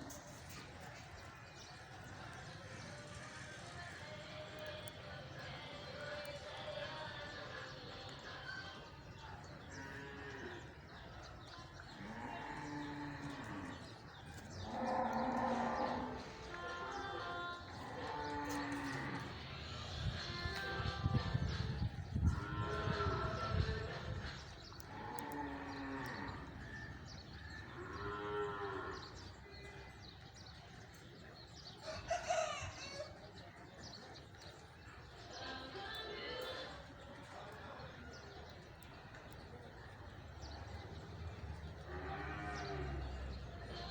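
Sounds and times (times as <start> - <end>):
cattle mooing: 14.6 - 16.2, 41.9 - 43.0.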